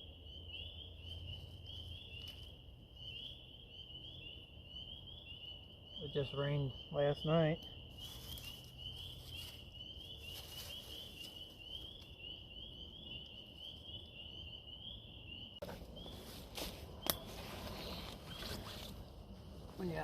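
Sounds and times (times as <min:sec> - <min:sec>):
rustling: 0:08.0 - 0:12.1, 0:15.6 - 0:19.9.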